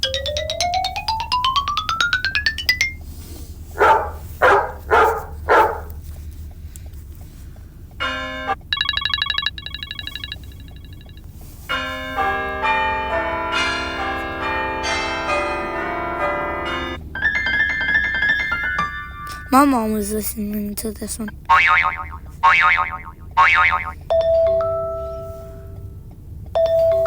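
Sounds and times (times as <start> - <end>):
chiming melodic ringtone: 0.0 - 3.0, 8.0 - 19.5, 23.8 - 25.9, 26.6 - 27.0
short phone ringtone blasts: 8.0 - 11.2
trilling electronic ring: 8.0 - 11.2.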